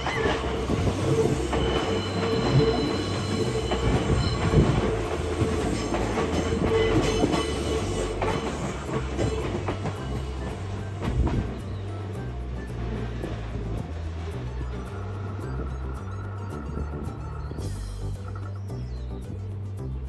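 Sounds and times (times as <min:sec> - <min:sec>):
wheels clattering over rail joints: 0:00.0 - 0:18.7
train wheels squealing on rails: 0:00.0 - 0:19.1.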